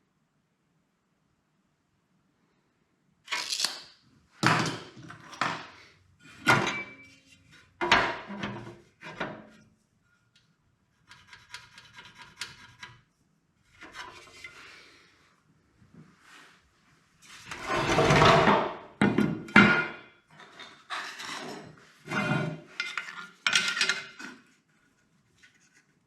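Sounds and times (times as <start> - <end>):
scraping of parts: 20.3 - 24.5.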